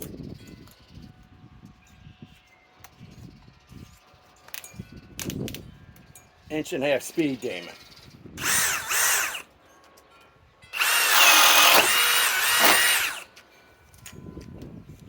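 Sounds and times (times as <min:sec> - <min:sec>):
hammer drill boring into wood: 0:08.4 - 0:09.4, 0:10.8 - 0:13.3.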